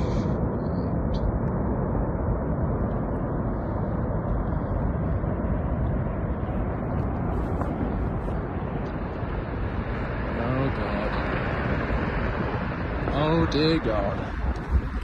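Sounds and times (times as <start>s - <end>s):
avalanche roar: 0.0s - 15.0s
wind buffeting microphone: 0.0s - 15.0s.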